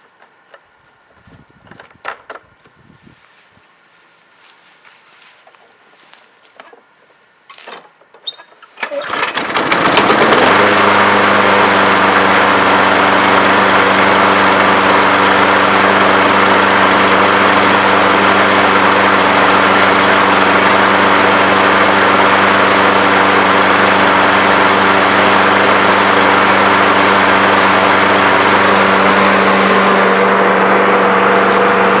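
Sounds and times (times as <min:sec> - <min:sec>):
lawn mower engine running: 0:08.8 - 0:32.0.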